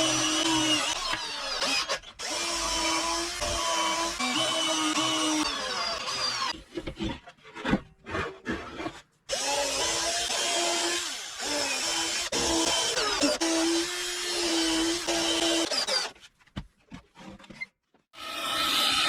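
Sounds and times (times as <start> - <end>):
power tool working wood: 0.0 - 6.6
short knocks and scrapes: 6.6 - 9.1.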